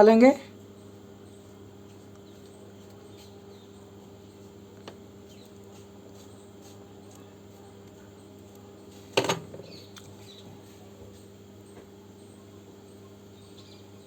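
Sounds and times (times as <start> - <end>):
faint electrical hum: 0.0 - 14.0.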